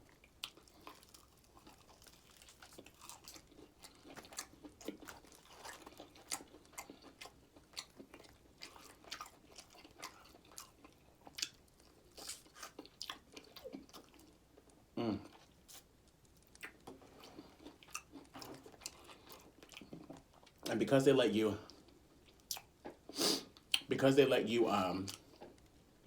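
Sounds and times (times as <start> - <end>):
chewing crispy food: 0.0 - 20.8, 21.6 - 23.9, 24.7 - 25.8.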